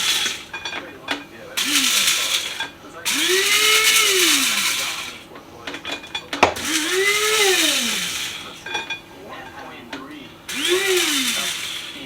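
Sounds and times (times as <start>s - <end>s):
electric coffee grinder: 0.0s - 0.6s, 1.6s - 5.3s, 6.4s - 8.8s, 10.5s - 12.0s
grinder click: 0.0s - 9.0s, 10.5s - 12.0s.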